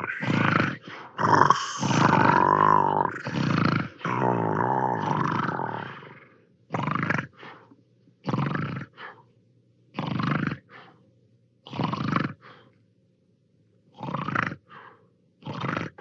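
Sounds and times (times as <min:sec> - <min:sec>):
cartoon rasping snore: 0:00.0 - 0:07.5, 0:08.3 - 0:09.1, 0:10.0 - 0:10.8, 0:11.7 - 0:12.6, 0:14.0 - 0:14.8, 0:15.4 - 0:16.0
soft breath: 0:07.4 - 0:07.8, 0:08.9 - 0:09.4, 0:10.6 - 0:11.1, 0:12.4 - 0:12.9, 0:14.6 - 0:15.2.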